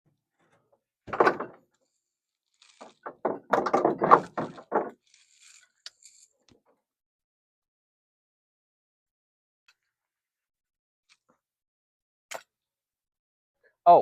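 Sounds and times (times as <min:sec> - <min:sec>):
heavy thunk: 0:01.1 - 0:01.6
knocks and clunks: 0:01.1 - 0:01.7, 0:02.8 - 0:05.0.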